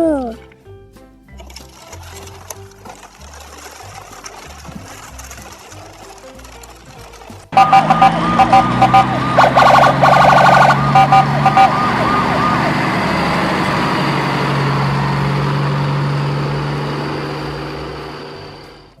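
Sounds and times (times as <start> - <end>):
electronic siren warbling: 7.5 - 15.6.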